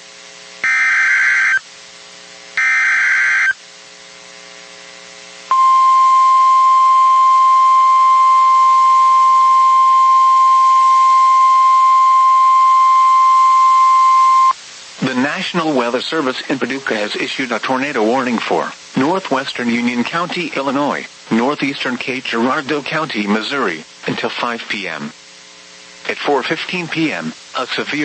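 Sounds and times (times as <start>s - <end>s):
digital data screech: 0.6s - 1.6s, 2.6s - 3.6s
high alarm tone: 0.6s - 1.6s, 2.6s - 3.6s, 5.5s - 14.6s.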